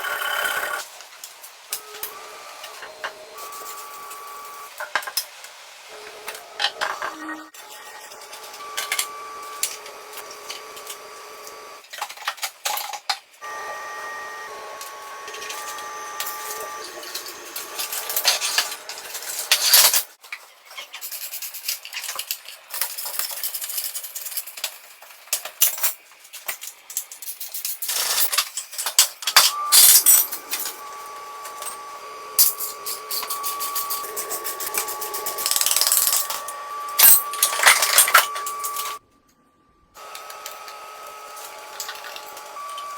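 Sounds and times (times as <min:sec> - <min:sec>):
metal tools clinking and scraping: 0:15.3 - 0:20.1, 0:27.2 - 0:39.0
steady high whine: 0:29.4 - 0:39.0.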